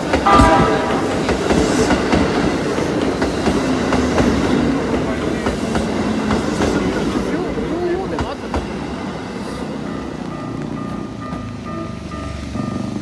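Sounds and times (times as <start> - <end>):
steady train rumble: 0.0 - 13.0
train wheels clicking on rail joints: 0.0 - 13.0.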